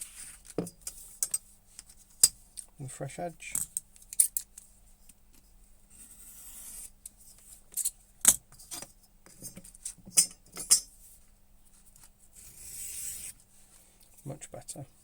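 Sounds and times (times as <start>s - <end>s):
tool scraping leather: 5.9s - 7.0s, 12.4s - 13.4s.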